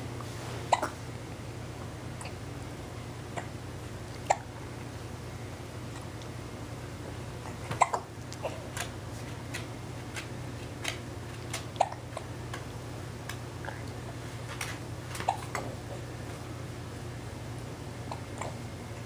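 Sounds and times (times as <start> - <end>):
baby hiccupping: 0.7 - 1.0, 3.3 - 3.6, 4.2 - 4.5, 7.5 - 8.7, 11.7 - 12.3, 15.2 - 15.8, 18.0 - 18.6.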